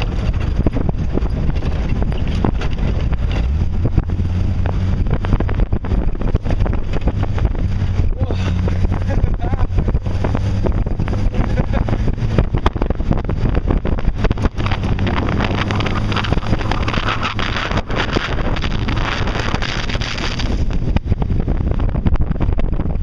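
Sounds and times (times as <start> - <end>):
knocks and rattles: 0.0 - 21.1
engine rumble: 0.0 - 23.0
wind buffeting microphone: 0.0 - 23.0.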